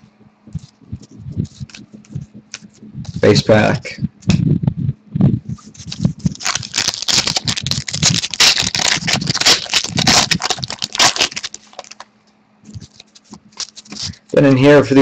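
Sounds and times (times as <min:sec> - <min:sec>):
cards and wrapper rustling and crackling: 0:00.6 - 0:03.4, 0:05.6 - 0:12.1, 0:12.7 - 0:14.4.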